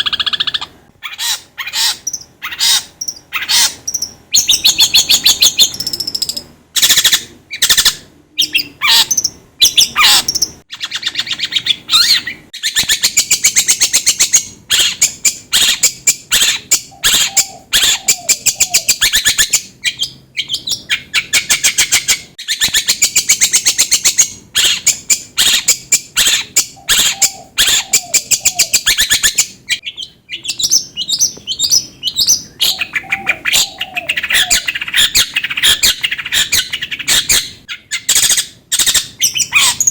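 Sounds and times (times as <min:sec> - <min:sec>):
bird chattering trills: 0:00.0 - 0:39.9
low bird warbles: 0:26.7 - 0:37.8.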